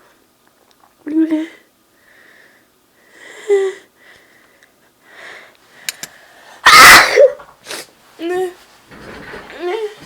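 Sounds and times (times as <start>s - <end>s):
loud sneeze: 6.6s - 7.9s.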